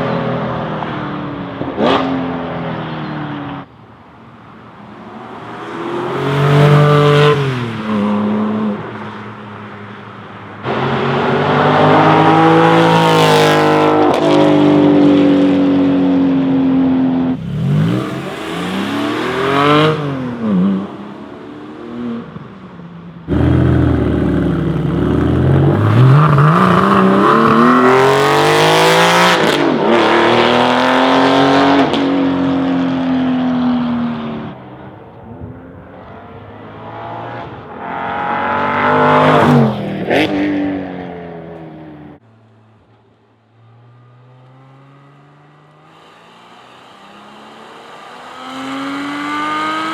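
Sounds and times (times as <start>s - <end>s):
sports car accelerating past: 5.0s - 9.4s, 10.6s - 22.4s, 23.3s - 34.5s, 43.5s - 49.9s.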